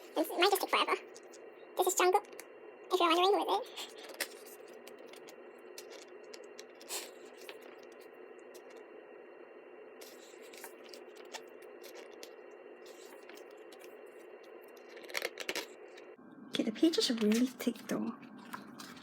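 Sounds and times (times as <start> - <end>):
low room hum: 0.0 - 19.0
book pages turning: 3.8 - 8.8, 10.0 - 16.2, 17.0 - 19.0.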